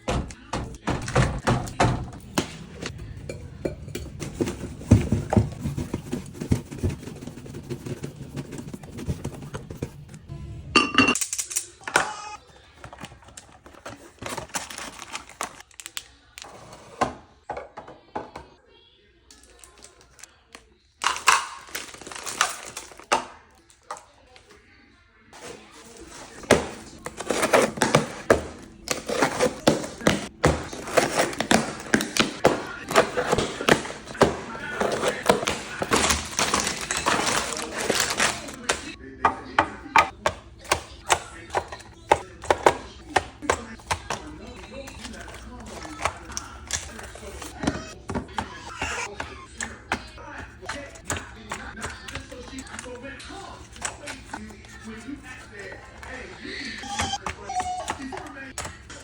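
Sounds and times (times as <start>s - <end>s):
household items knocking and clinking: 0.0s - 11.3s, 12.7s - 15.6s, 21.0s - 24.0s, 25.4s - 53.0s
packaging crinkling: 13.2s - 16.1s, 21.0s - 23.1s, 25.6s - 39.0s.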